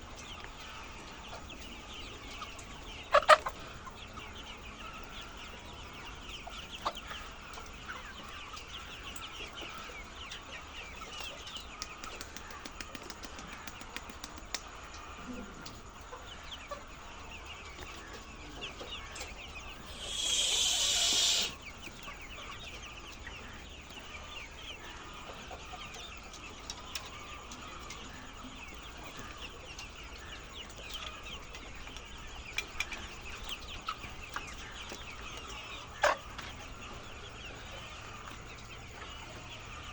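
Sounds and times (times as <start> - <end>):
hens clucking: 2.4 - 3.6, 19.8 - 21.6
loud hissing burst: 19.9 - 21.6.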